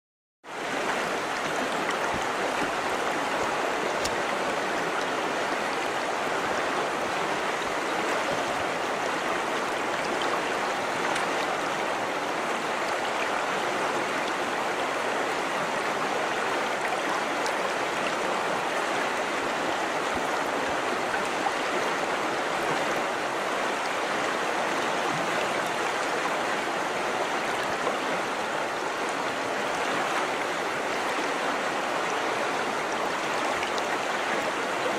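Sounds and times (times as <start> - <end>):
river flowing over stones: 0.5 - 34.9.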